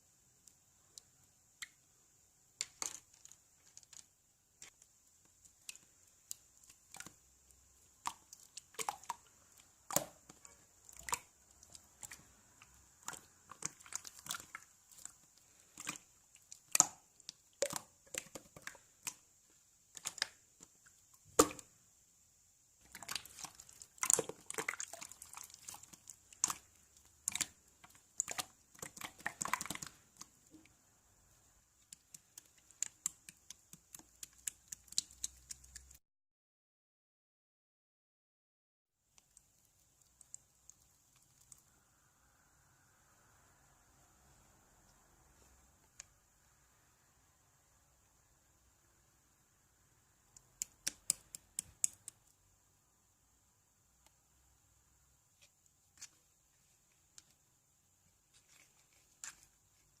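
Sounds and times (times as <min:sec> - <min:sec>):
sticky pops and clicks: 0:50.3 - 0:52.3.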